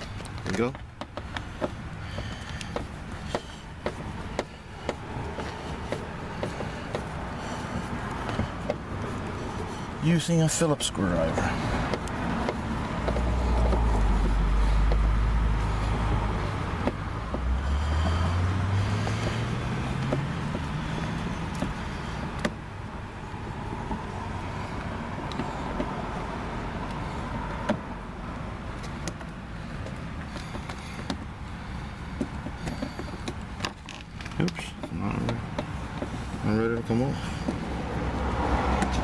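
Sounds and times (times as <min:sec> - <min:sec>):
engine revving up: 0:13.0 - 0:21.2.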